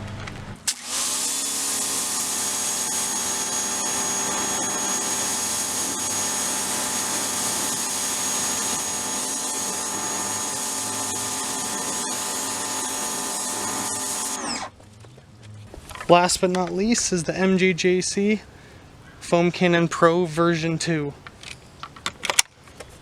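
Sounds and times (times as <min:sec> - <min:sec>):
pressure washer motor humming: 0:00.0 - 0:14.7.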